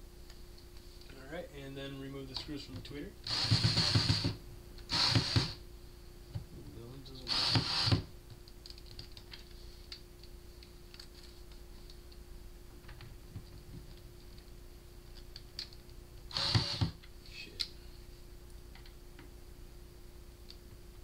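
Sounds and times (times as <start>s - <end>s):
faint steady hum: 0.0s - 21.0s
screwdriver clicking on screws: 16.3s - 17.0s.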